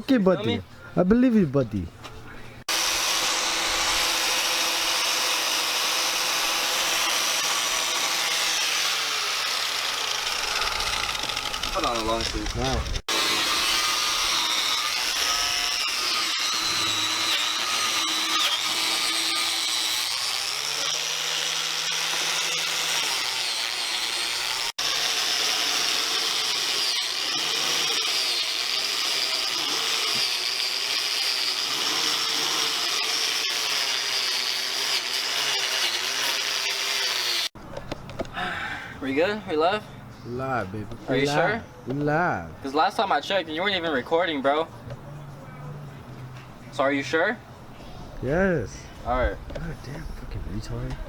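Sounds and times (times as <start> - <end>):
angle grinder wire wheel whining: 2.7 - 37.5.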